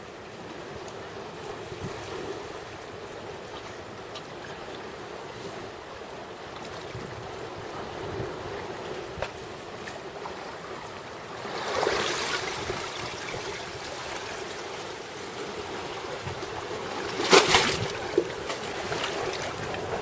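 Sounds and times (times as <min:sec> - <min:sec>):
loud splash: 0:17.2 - 0:17.9.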